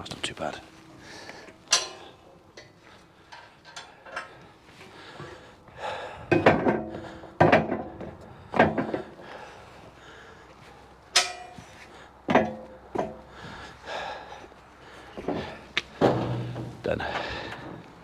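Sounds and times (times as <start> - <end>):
loud ringing timber clunks: 6.3 - 9.4, 11.2 - 13.4, 15.2 - 17.6.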